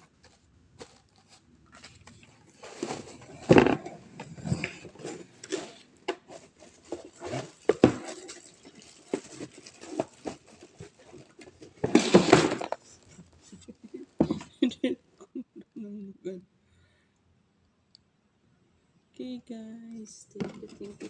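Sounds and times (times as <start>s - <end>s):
item clattering: 0.8s - 14.6s, 20.4s - 21.0s.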